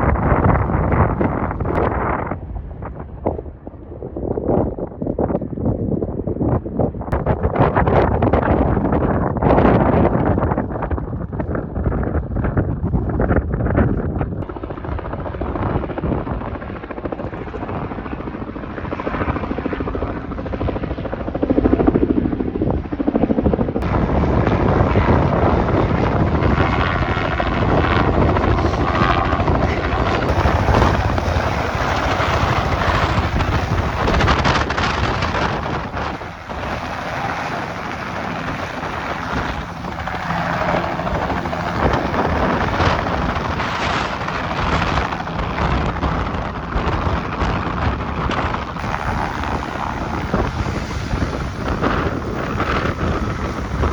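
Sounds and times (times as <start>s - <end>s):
helicopter rotor and engine: 14.4s - 53.9s.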